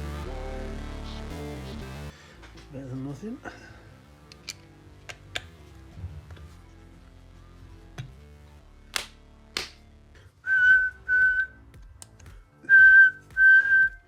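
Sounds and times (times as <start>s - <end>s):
sharp finger snaps: 8.9s - 9.8s
person whistling short notes: 10.5s - 11.6s, 12.6s - 14.0s.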